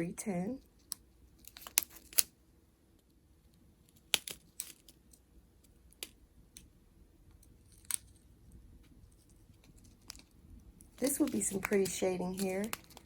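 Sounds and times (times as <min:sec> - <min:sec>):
plastic bags of beads rattling: 0:09.6 - 0:13.0.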